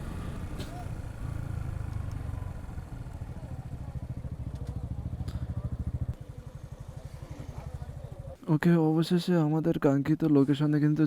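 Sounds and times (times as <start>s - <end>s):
motorcycle engine running: 0.0s - 8.4s.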